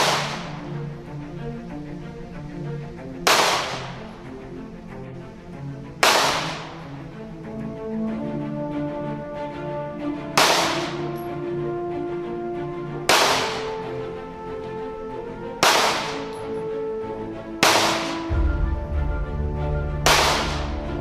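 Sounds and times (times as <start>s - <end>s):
sharp crashing hits: 0.0s - 0.5s, 20.1s - 20.8s
sustained music chords: 0.0s - 21.0s.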